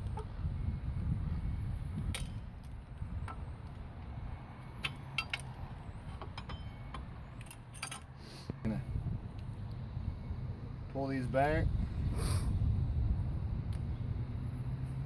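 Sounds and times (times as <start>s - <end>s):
steady low rumble: 0.0s - 4.8s, 8.6s - 14.7s
light metallic clicks and clinks: 4.8s - 5.6s, 6.2s - 8.2s.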